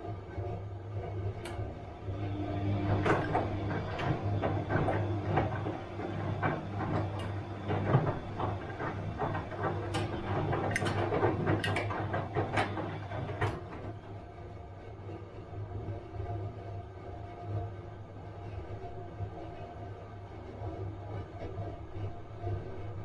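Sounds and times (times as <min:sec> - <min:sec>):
washing machine motor hum: 0:00.0 - 0:23.0
washing machine drum knocking: 0:02.2 - 0:13.9.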